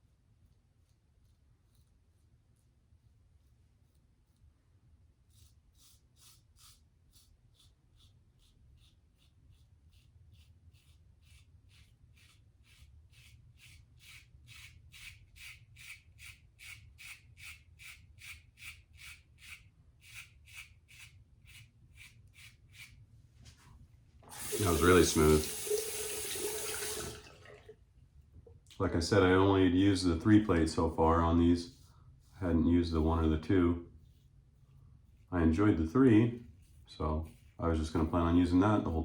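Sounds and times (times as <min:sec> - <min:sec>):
razor scraping stubble: 0:05.2 - 0:23.0, 0:24.3 - 0:27.0.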